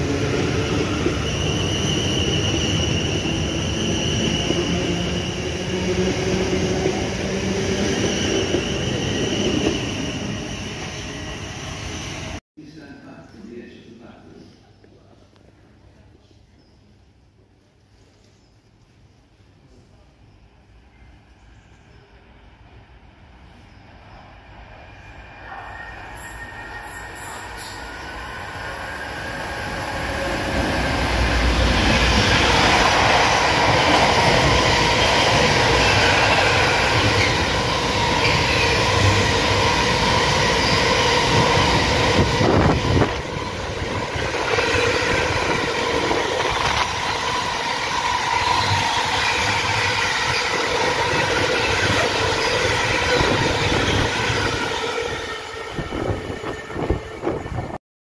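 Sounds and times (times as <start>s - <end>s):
train wheels rumbling on track: 23.4s - 57.8s.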